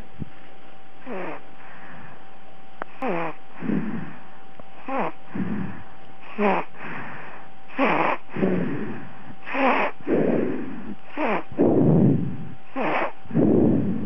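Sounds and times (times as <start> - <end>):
baby snoring: 1.0 - 1.4, 2.9 - 4.2, 4.8 - 14.0.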